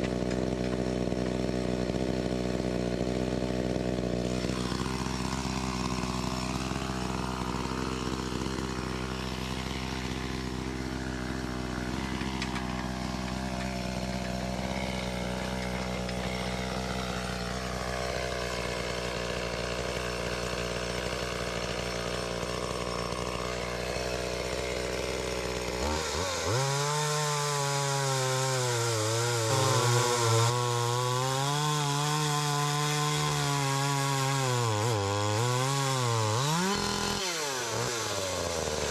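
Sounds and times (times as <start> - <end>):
chainsaw cutting wood: 0.0 - 38.9
chainsaw idling: 0.0 - 38.9.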